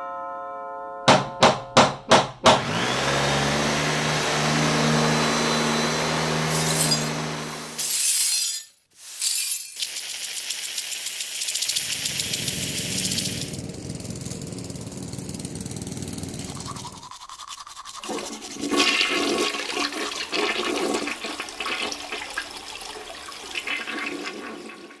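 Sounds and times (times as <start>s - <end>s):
toothbrush scrubbing teeth: 9.8s - 13.5s, 16.4s - 21.2s
toilet flushing: 9.8s - 13.6s, 16.4s - 25.0s.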